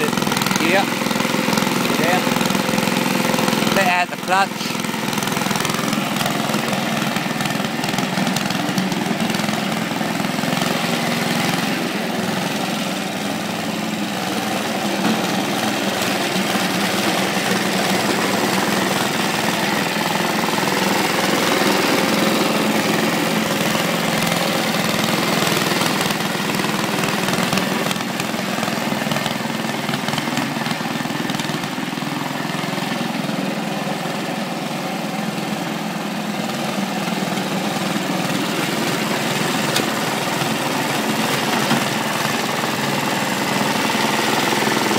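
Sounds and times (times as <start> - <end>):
lawn mower engine running: 0.0 - 44.9.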